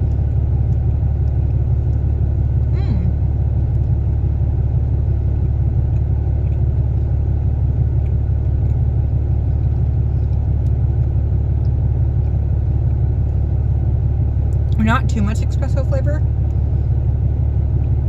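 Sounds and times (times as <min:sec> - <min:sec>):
cookie being chewed: 0:00.0 - 0:14.8
steady low rumble: 0:00.0 - 0:18.0.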